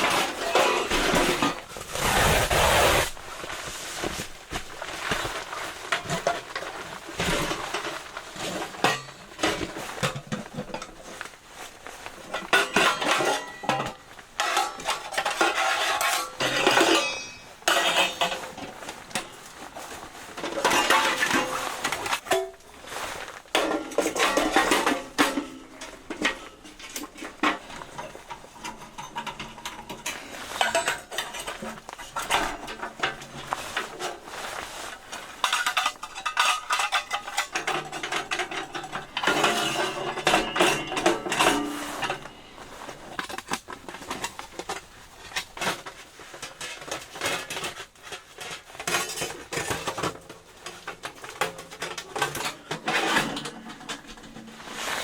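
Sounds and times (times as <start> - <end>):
metal items clattering: 0.0 - 55.0.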